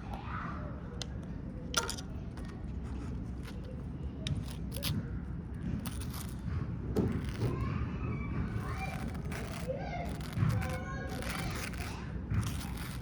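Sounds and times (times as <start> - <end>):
low room hum: 0.0 - 13.0
knife scraping across toast: 5.8 - 6.4, 8.5 - 13.0.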